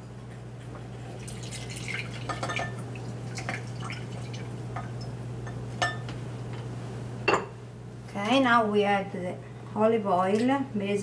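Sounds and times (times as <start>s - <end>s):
steady low hum: 0.0s - 11.0s
juice pouring into glass bowl: 1.1s - 4.6s.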